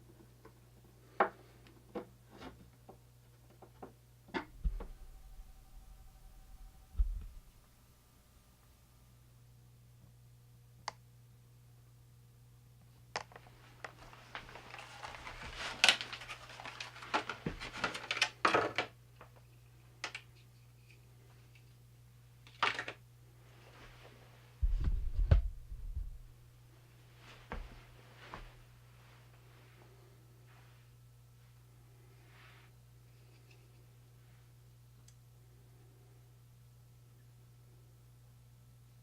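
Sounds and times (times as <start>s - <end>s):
steady low hum: 0.0s - 16.2s, 23.0s - 39.0s
low thumps: 4.4s - 9.3s, 24.6s - 26.5s.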